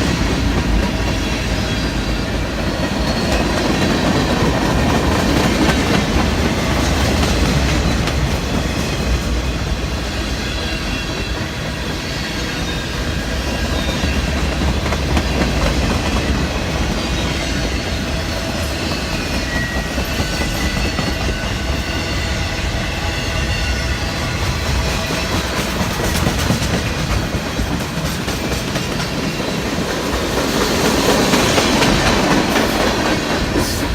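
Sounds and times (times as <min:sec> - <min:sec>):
rumble of steel wheels on rail: 0:00.0 - 0:33.9
high wheel squeals: 0:17.0 - 0:24.4.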